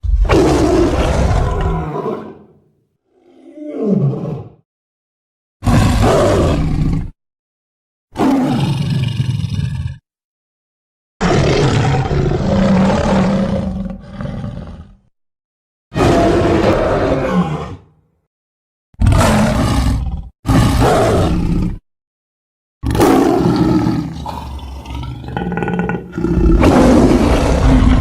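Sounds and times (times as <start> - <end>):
creature roars: 0.0 - 4.6, 5.6 - 7.2, 8.2 - 9.3, 11.2 - 15.0, 16.0 - 18.0, 19.0 - 21.8, 22.8 - 28.0.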